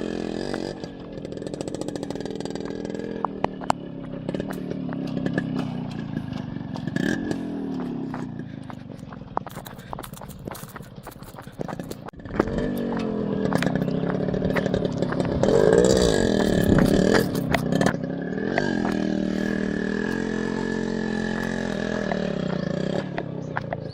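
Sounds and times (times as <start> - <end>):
motorcycle engine revving: 0.0 - 23.9.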